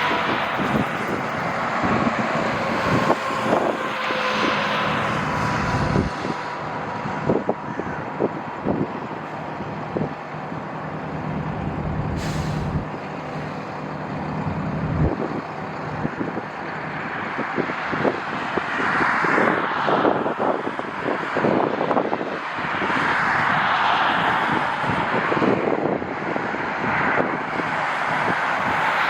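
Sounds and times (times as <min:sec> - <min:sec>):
wind buffeting microphone: 0:00.0 - 0:13.0, 0:14.2 - 0:29.0
jet airliner engine noise: 0:00.0 - 0:14.0, 0:14.9 - 0:29.0
low engine hum: 0:00.0 - 0:17.2
short hiss: 0:12.2 - 0:12.8.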